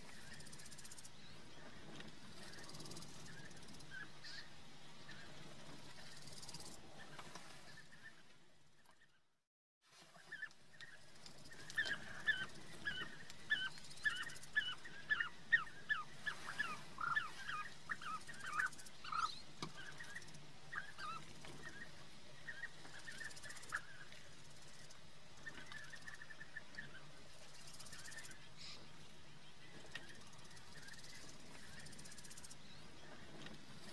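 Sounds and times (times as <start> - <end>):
birds rolling calls: 10.2 - 28.9.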